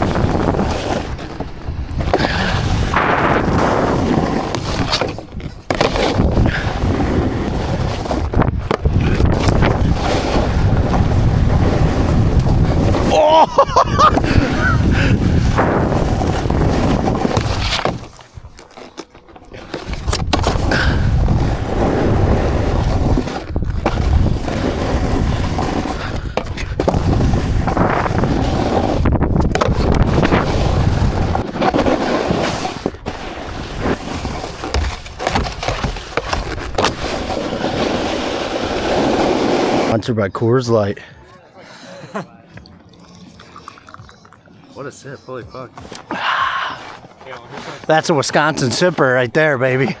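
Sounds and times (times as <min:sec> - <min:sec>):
wind buffeting microphone: 0:00.0 - 0:18.6, 0:19.8 - 0:39.9
sliding over packed snow: 0:00.0 - 0:40.0, 0:45.5 - 0:50.0.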